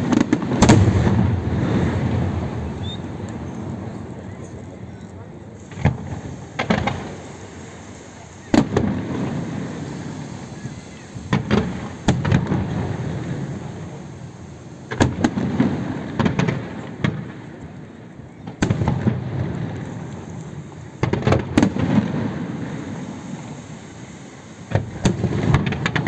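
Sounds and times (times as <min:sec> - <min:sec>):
low rumbling echo: 0:00.0 - 0:06.5
fireworks shells bursting: 0:21.0 - 0:26.0.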